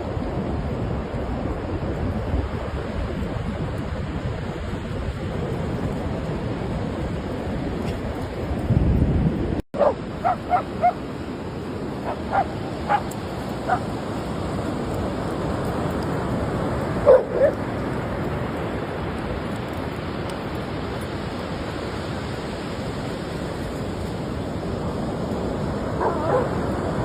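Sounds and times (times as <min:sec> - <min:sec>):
dog yipping: 0:09.8 - 0:11.0, 0:12.0 - 0:13.9, 0:17.1 - 0:17.6, 0:26.0 - 0:26.6.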